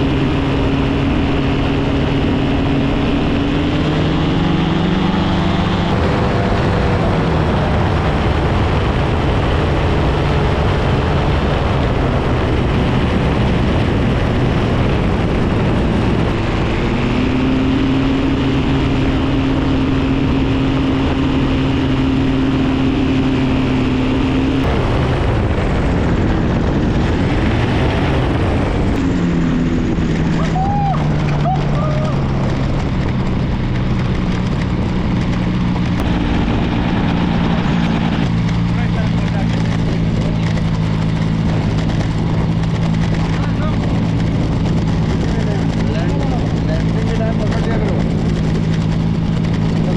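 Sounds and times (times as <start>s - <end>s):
paramotor engine and propeller: 0.0s - 49.9s
wind rush on microphone: 0.0s - 49.9s.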